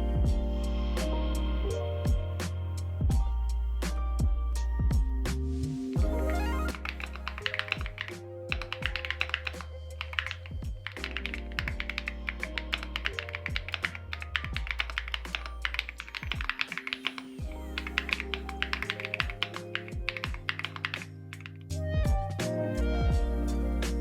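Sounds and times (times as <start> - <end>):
background music: 0.0 - 24.0
mechanical keyboard typing: 6.6 - 21.7.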